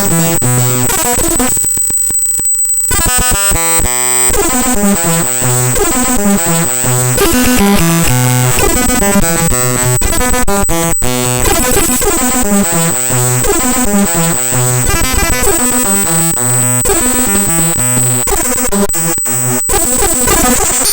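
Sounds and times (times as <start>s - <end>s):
harsh buzzy electronic tones: 0.0s - 20.9s
high whine: 0.0s - 20.9s.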